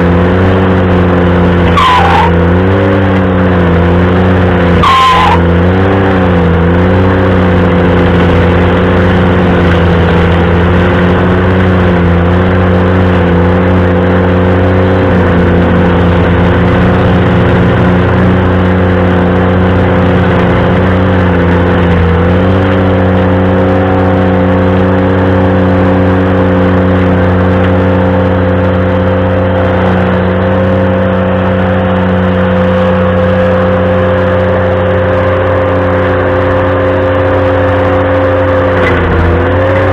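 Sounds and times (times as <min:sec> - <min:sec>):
tractor engine running hard: 0:00.0 - 0:39.9
brief high squeal: 0:01.6 - 0:02.4, 0:04.8 - 0:05.5.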